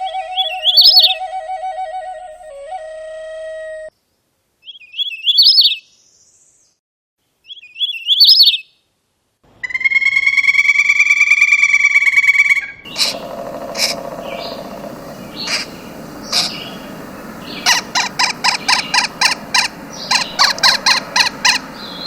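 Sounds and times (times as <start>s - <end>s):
bird chirping: 0.0s - 1.2s, 4.6s - 6.8s, 7.4s - 8.7s, 12.8s - 22.0s
nasal bird call: 0.0s - 1.3s, 9.6s - 22.0s
sharp clicks: 17.6s - 21.6s.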